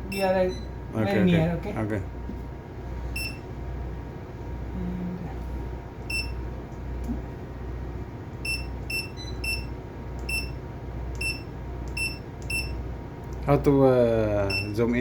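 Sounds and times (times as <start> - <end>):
low steady hum: 0.0 - 15.0
keypad beeps: 0.1 - 0.7, 3.2 - 3.4, 6.1 - 6.4, 8.4 - 10.6, 11.2 - 12.8, 14.5 - 14.8.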